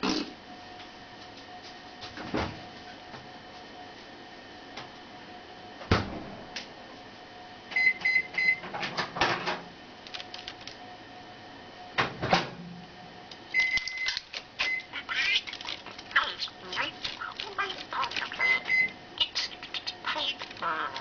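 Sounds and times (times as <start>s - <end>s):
microwave beeps: 7.7s - 8.7s, 13.5s - 15.0s, 18.3s - 19.0s
sharp squawk-like calls: 14.6s - 21.0s.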